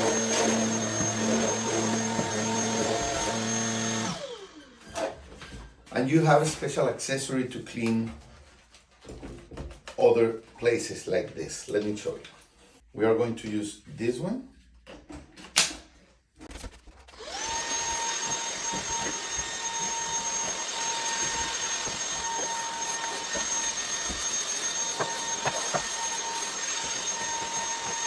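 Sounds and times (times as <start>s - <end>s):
vacuum motor whine: 0.0s - 4.9s, 17.2s - 28.0s.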